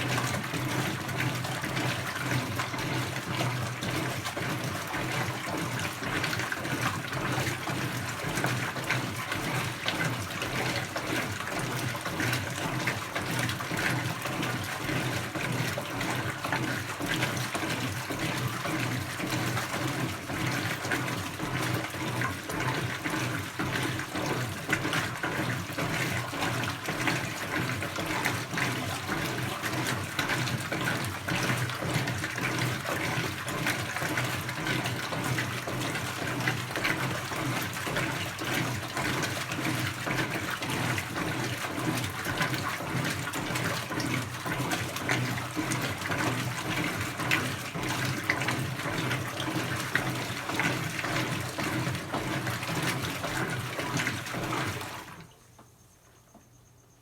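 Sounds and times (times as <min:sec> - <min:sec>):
water splashing in washing machine: 0:00.0 - 0:55.8.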